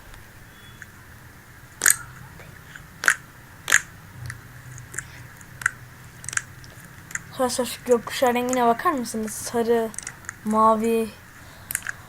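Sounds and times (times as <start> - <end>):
slime crackling pops: 3.0 - 3.9.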